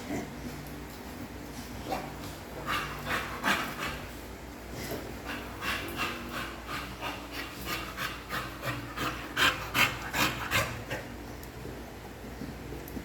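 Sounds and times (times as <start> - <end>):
dog panting: 2.5 - 4.3, 4.9 - 11.2.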